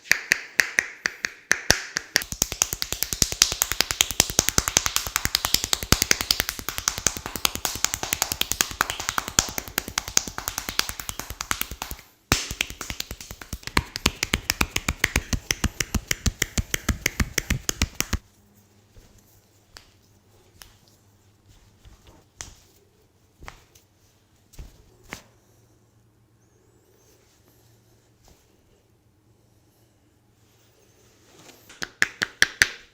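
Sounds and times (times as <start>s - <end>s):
rapid sharp snapping clicks: 0.3s - 18.2s.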